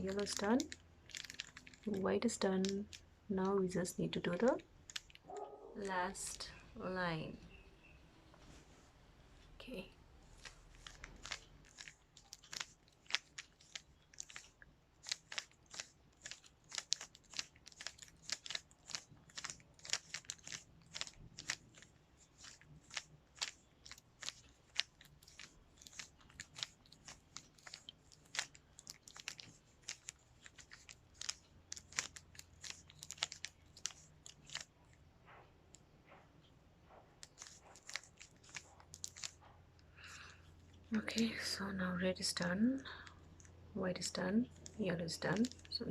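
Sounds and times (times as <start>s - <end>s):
puzzle cube clicking as turned: 0.1s - 2.0s, 4.4s - 5.4s, 10.4s - 34.8s, 37.2s - 39.4s.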